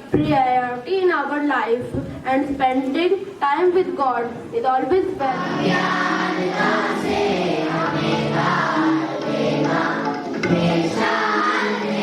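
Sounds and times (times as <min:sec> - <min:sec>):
children singing in chorus: 0:05.3 - 0:12.0.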